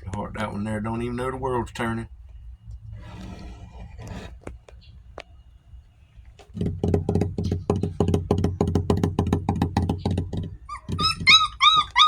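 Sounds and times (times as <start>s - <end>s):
rapid rhythmic thumping: 6.5s - 11.5s
puppy whining: 10.6s - 12.0s.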